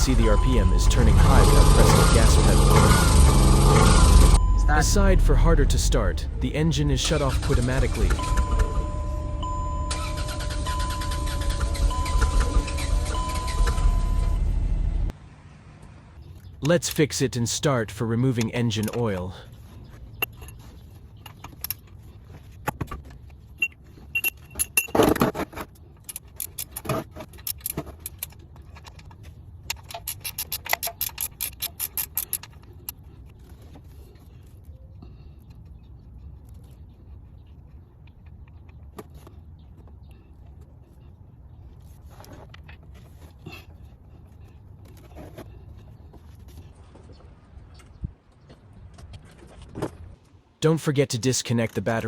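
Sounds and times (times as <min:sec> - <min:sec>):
low steady hum: 0:00.0 - 0:20.9.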